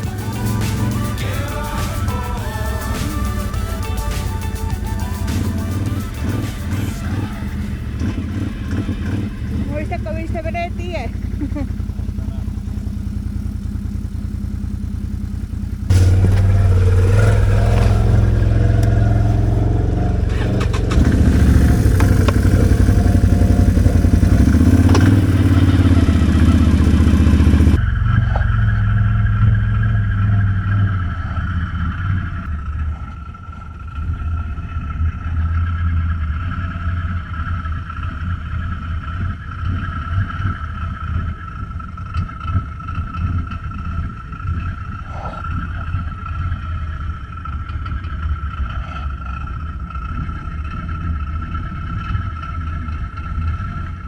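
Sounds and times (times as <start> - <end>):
thin high whine: 0.0 - 9.8
quad bike engine revving: 0.0 - 54.0.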